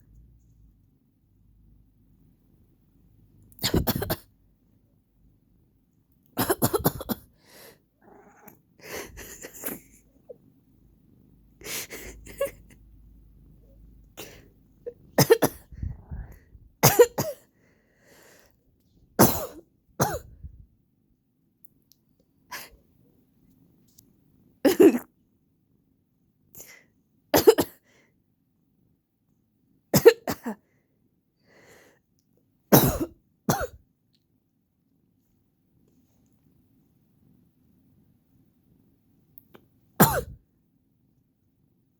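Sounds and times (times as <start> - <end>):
person coughing: 3.6 - 4.3, 6.4 - 7.3, 15.2 - 15.9, 16.8 - 17.4, 19.2 - 20.4, 24.7 - 25.1, 27.4 - 27.8, 30.0 - 30.6, 32.8 - 33.8, 40.0 - 40.4.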